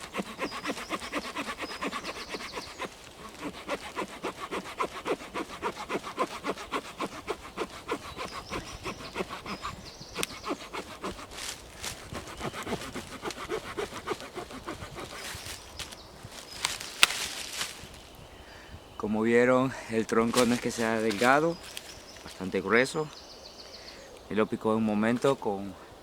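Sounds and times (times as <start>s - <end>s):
saw rasping through log: 0.0s - 15.9s.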